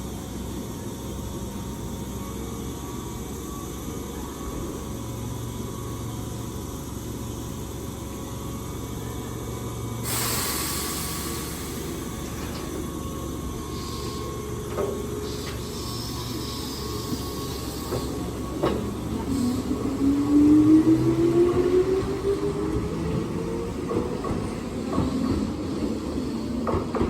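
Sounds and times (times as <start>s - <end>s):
electric train humming: 0.0s - 27.0s
compressed air hiss: 10.0s - 12.0s.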